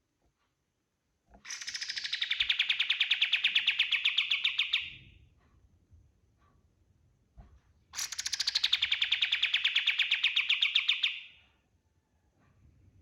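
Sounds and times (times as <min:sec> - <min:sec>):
songbird trilling: 0:01.5 - 0:05.0, 0:08.0 - 0:11.3.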